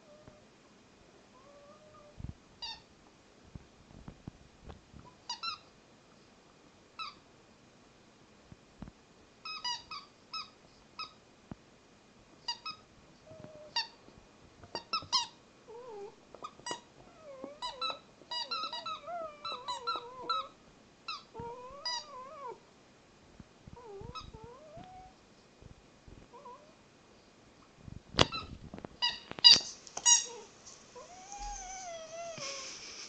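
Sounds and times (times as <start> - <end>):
dog whining: 1.4 - 2.9, 14.7 - 22.6, 23.8 - 25.2, 26.3 - 26.8, 28.2 - 32.8
rubber squeaky toy squeaking: 2.6 - 2.8, 5.3 - 5.6, 9.4 - 11.2, 12.5 - 12.8, 14.7 - 15.4, 16.4 - 16.9, 17.6 - 20.5, 21.1 - 22.2, 23.8 - 24.4, 28.2 - 30.5.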